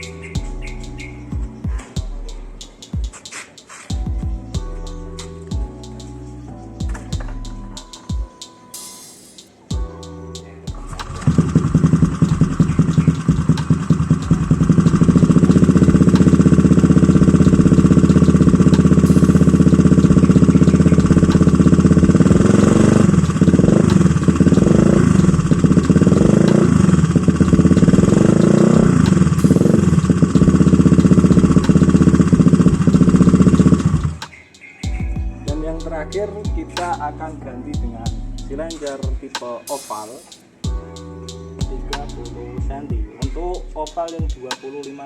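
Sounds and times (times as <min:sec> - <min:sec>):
held music tones: 0:00.0 - 0:45.0
motorcycle engine idling: 0:10.7 - 0:34.2.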